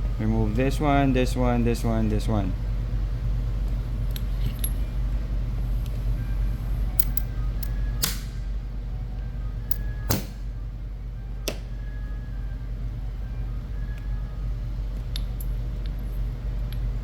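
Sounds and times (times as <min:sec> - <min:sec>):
steady low hum: 0:00.0 - 0:17.0
tools clinking against metal parts: 0:04.1 - 0:04.9, 0:07.0 - 0:07.8.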